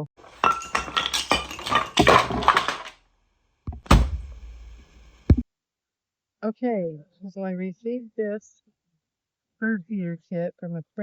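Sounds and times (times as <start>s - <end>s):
hard objects clattering and clinking: 0.0s - 2.9s, 3.7s - 5.4s.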